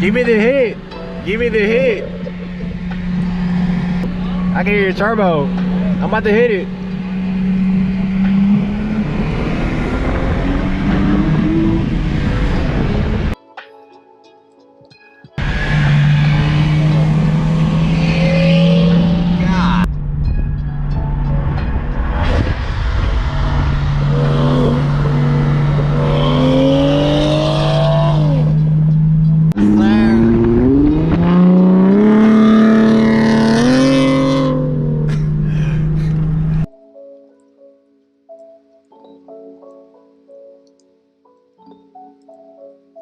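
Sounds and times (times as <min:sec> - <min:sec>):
steady low drone: 0:00.0 - 0:13.4, 0:15.4 - 0:33.9
car engine accelerating hard: 0:01.5 - 0:13.4, 0:15.4 - 0:20.2, 0:20.9 - 0:36.7.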